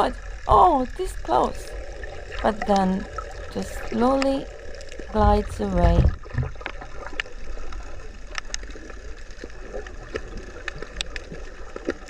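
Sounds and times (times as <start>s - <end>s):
underwater seawater rumble: 0.0s - 12.0s
sharp clicks and crackles: 3.9s - 12.0s.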